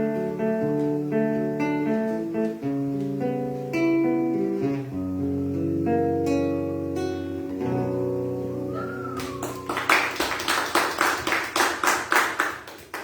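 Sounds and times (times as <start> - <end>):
acoustic guitar chords: 0.0 - 9.8.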